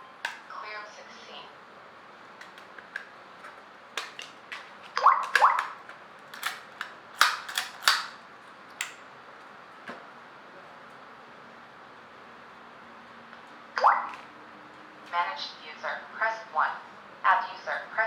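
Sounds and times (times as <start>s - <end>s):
door lock clicks and snaps: 6.4s - 8.2s.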